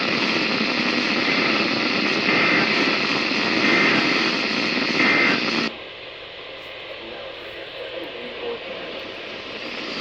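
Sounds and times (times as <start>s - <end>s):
heavy radio static hiss: 0.0s - 10.0s.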